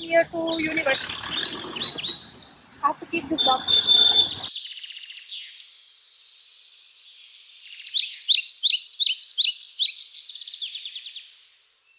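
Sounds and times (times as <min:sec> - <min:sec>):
bird singing repeated notes: 0:00.0 - 0:04.5
faint birds chirping: 0:00.0 - 0:04.5.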